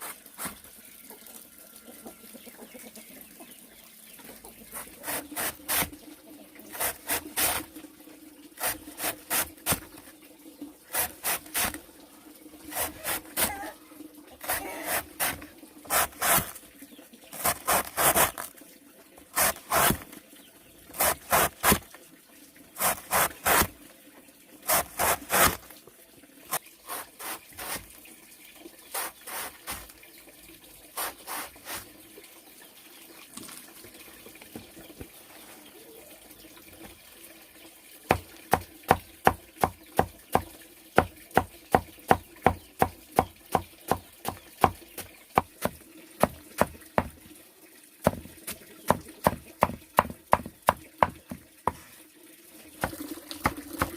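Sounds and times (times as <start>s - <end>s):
hand tool strokes on wood: 14.4s - 16.6s.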